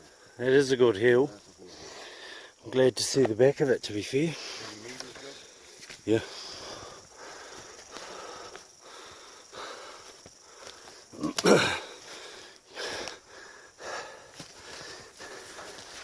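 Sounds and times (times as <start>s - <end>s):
man panting heavily: 6.2s - 16.0s.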